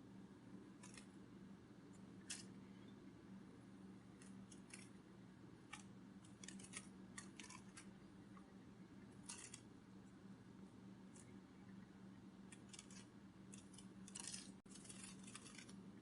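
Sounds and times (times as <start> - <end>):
steady low hum: 0.0 - 16.0
faint irregular clicks: 4.2 - 5.0, 5.7 - 8.5.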